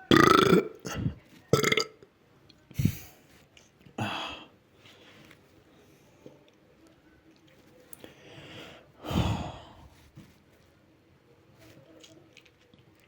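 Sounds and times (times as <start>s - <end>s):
boy burping: 0.0s - 2.0s.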